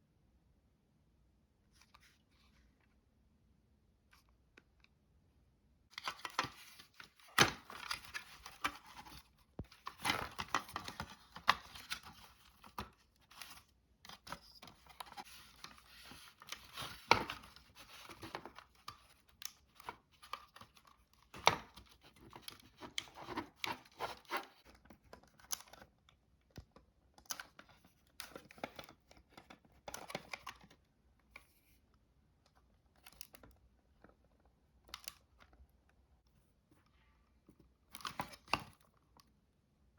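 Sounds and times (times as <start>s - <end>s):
plastic parts crinkling and scraping: 6.0s - 25.9s.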